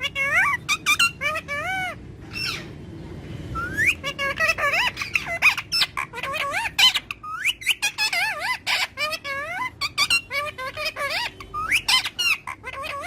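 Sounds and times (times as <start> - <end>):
parakeet squawking: 0.0 - 2.8, 3.6 - 13.0.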